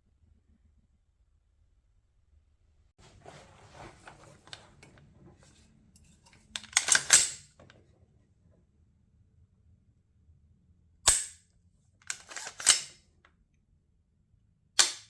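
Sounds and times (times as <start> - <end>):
rifle clicks and rattles: 4.0 - 7.8, 12.0 - 13.0.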